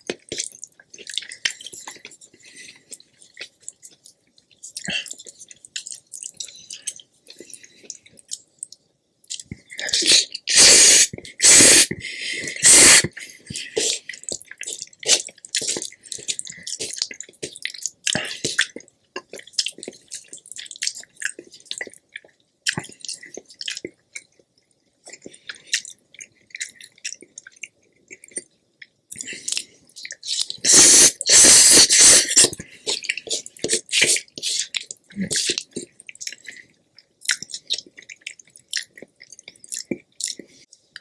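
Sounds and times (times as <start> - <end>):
wet chewing and smacking: 0.0 - 10.5, 13.0 - 41.0.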